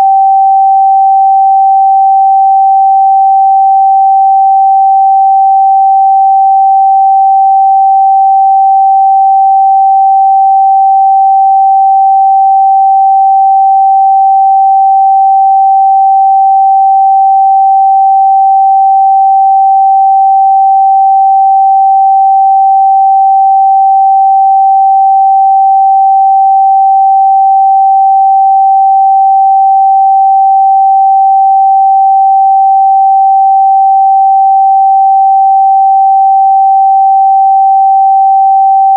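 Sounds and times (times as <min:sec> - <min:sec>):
sine-wave test tone: 0:00.0 - 0:38.9.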